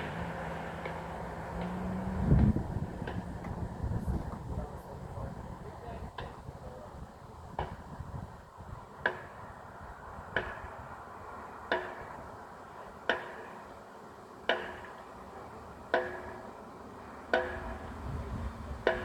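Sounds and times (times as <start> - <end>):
low rumble: 0.0 - 5.9.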